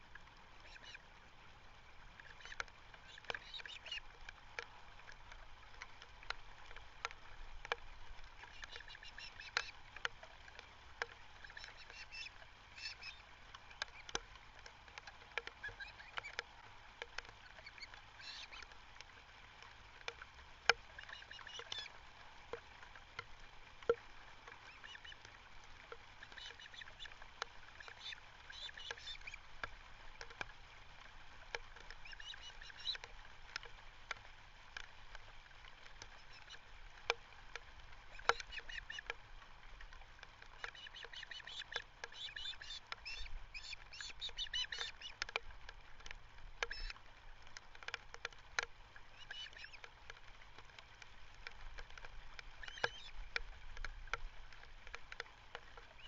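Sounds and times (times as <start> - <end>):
faint steady hiss: 0.0 - 56.0
birds calling: 0.6 - 1.0, 2.2 - 4.0, 8.5 - 9.7, 11.4 - 14.1, 15.6 - 16.4, 21.0 - 21.9, 24.6 - 25.2, 26.2 - 29.4, 32.0 - 33.0, 38.1 - 39.1, 40.6 - 45.2, 46.6 - 47.0, 49.2 - 49.8, 52.6 - 53.1.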